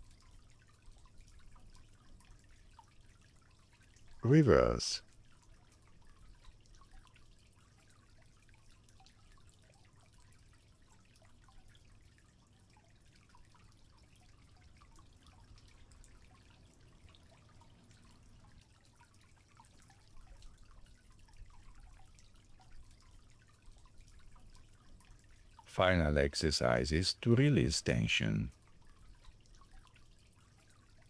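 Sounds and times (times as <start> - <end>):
water trickling and dripping: 5.9 - 25.4.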